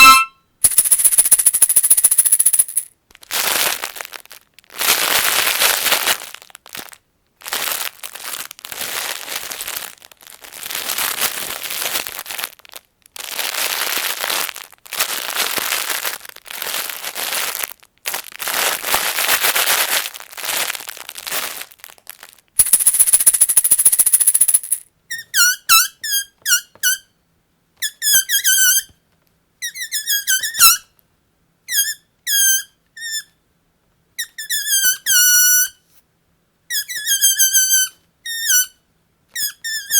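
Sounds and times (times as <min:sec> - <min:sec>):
bag crumpling and rustling: 0:02.7 - 0:24.8.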